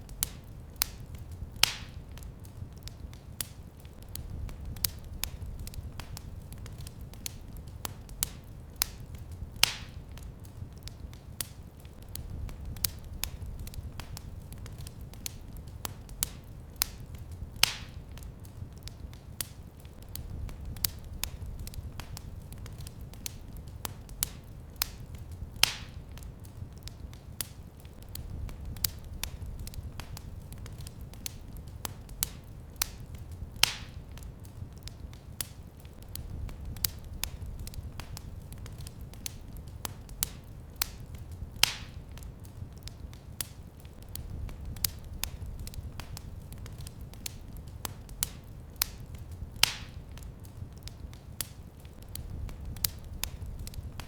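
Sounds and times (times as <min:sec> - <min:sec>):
low rumble of flames: 0:00.0 - 0:54.0
wood fire crackling and popping: 0:00.0 - 0:54.0.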